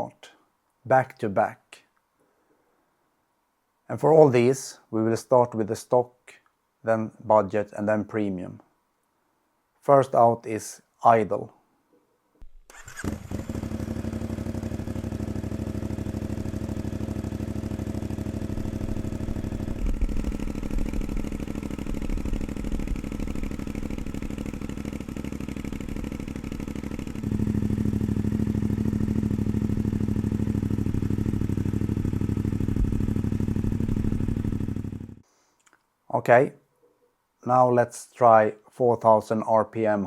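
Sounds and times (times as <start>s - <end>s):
motorcycle engine idling: 12.8s - 35.2s.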